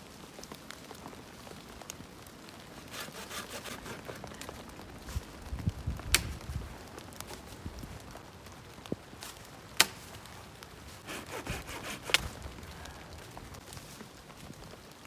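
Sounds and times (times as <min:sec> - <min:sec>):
sharp cracks of wood: 0:00.6 - 0:14.7
wood rubbing and scraping: 0:02.7 - 0:05.3, 0:10.8 - 0:14.0.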